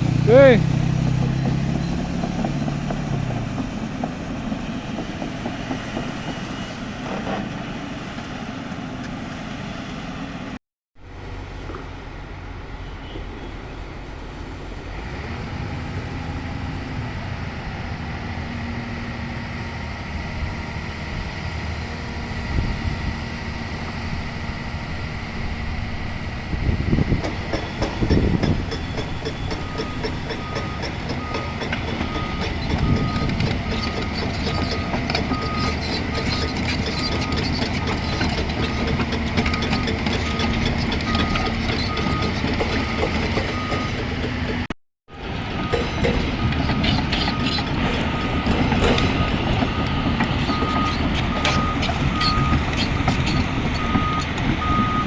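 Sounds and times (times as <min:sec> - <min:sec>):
excavator engine and hydraulics: 0:00.0 - 0:55.0
rattling: 0:46.0 - 0:49.2, 0:50.2 - 0:54.6.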